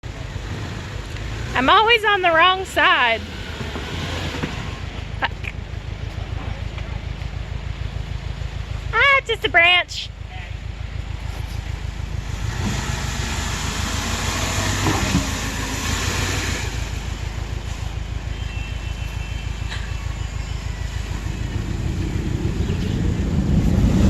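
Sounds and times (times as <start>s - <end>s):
car engine running: 0.0s - 24.0s
tyre and suspension jolting: 0.4s - 24.0s.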